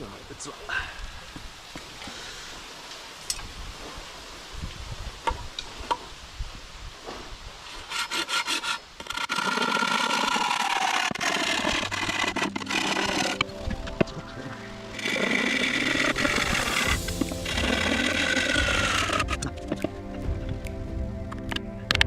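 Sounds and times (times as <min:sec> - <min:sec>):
hand saw cutting bamboo: 0:07.6 - 0:13.9, 0:14.8 - 0:19.8.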